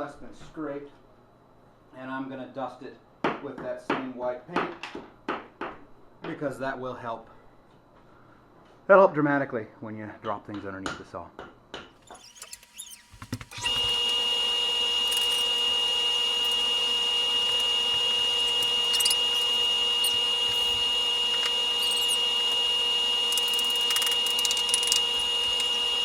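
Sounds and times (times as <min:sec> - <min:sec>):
high constant whine: 0:13.5 - 0:26.0.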